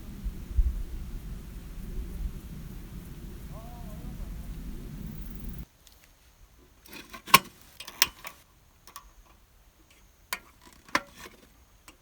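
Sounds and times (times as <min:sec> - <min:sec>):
objects clicking and knocking: 0:06.9 - 0:12.0.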